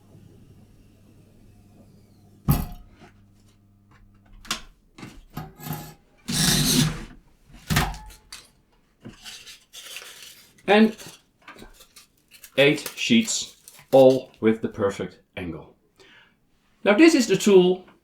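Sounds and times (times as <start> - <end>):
faint electrical hum: 0.0 - 18.0
foam sheets scraping: 5.8 - 8.3, 9.2 - 14.4.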